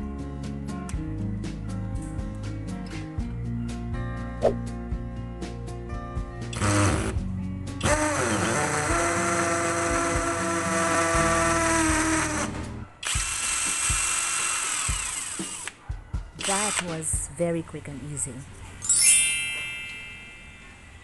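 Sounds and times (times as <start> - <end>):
background music with steady beat: 0.0 - 8.2, 11.2 - 17.7
cordless drill whining: 6.6 - 7.2, 7.8 - 15.8, 16.4 - 16.9.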